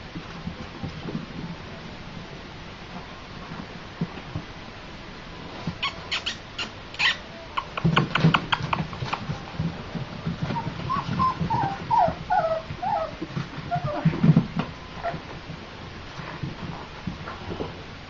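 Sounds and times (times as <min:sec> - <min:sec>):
puppies whimpering: 0:05.8 - 0:09.4, 0:10.4 - 0:14.2
puppies moving with clicks and thumps: 0:07.0 - 0:17.8.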